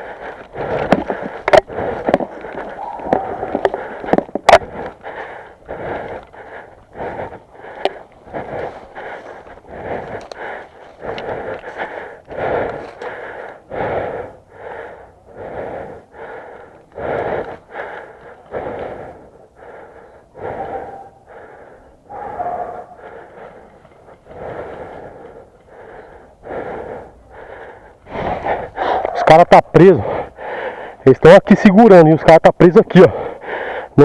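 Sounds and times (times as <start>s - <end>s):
person panting hard: 0.0s - 31.2s, 33.0s - 34.0s
faint whistling breath: 20.1s - 23.4s.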